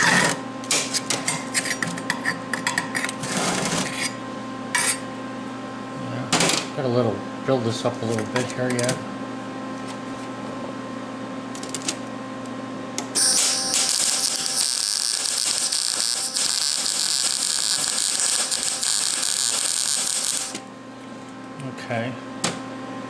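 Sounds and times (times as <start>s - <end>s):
steady electrical hum: 0.0s - 23.0s
welder arc crackling and hissing: 13.2s - 20.6s.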